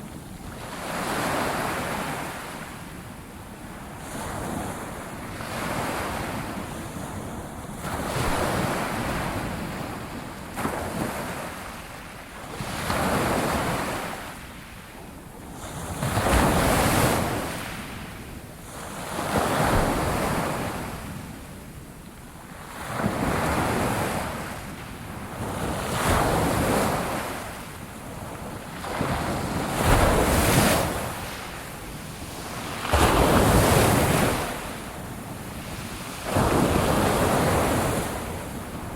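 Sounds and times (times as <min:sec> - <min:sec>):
ocean waves washing ashore: 0:22.6 - 0:38.9.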